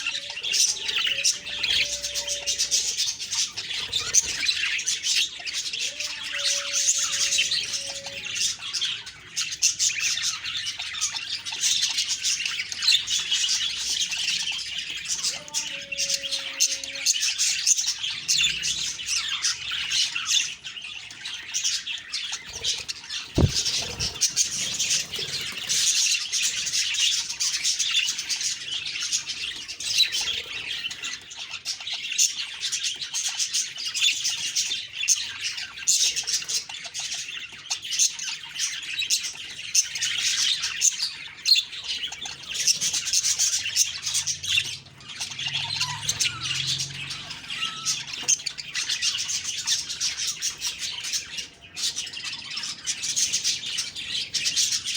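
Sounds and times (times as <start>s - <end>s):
budgerigars chattering and chirping: 0.0s - 54.9s
short dull thump: 23.4s - 24.1s.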